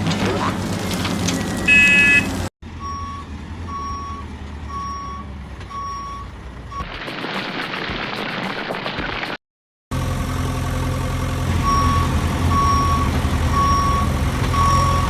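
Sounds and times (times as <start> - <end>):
reversing alarm beeping: 1.4 - 6.8, 11.6 - 15.0.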